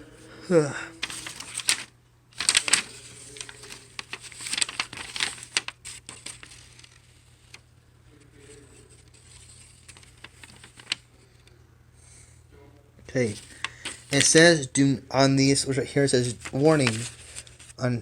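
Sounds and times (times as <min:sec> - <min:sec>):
packaging rustling and crinkling: 0:01.0 - 0:07.0, 0:09.8 - 0:11.0.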